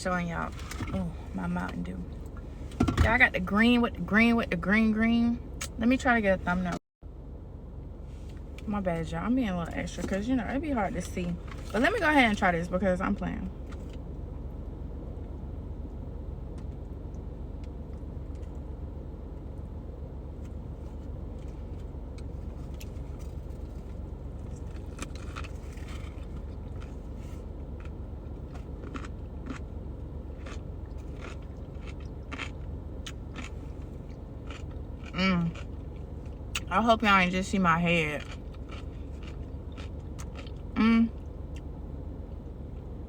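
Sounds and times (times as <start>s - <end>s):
low car rumble: 0.0s - 43.0s
crunchy chewing: 20.4s - 36.7s, 38.2s - 41.7s.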